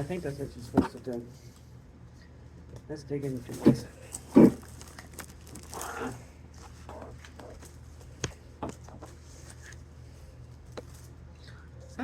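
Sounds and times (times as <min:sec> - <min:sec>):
steady low hum: 0:00.0 - 0:12.0.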